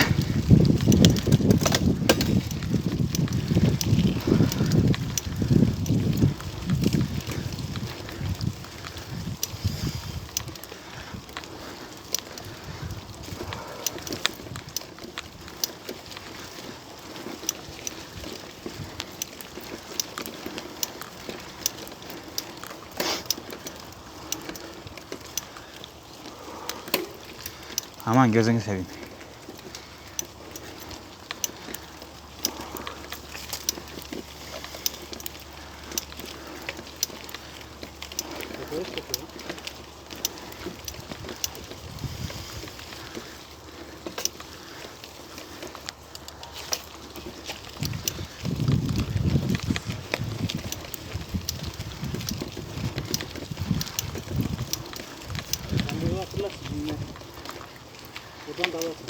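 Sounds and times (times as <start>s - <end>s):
wind rumbling on microphone: 0.0s - 22.8s, 23.5s - 58.5s
bicycle frame and chain rattling: 0.0s - 59.0s
tyres crunching over gravel: 0.0s - 59.0s.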